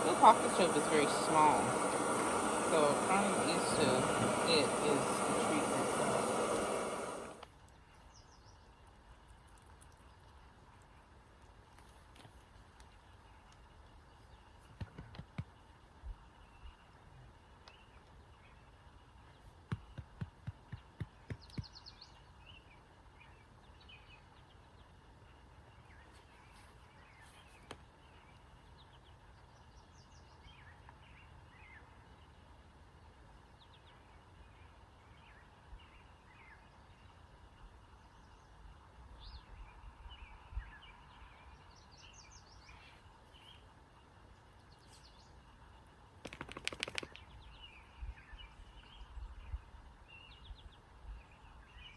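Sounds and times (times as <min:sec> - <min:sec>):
birds chirping: 0:00.0 - 0:07.4
loud burst of noise: 0:00.0 - 0:07.4
faint outdoor background: 0:00.0 - 0:51.9
sharp clicks: 0:46.2 - 0:47.2.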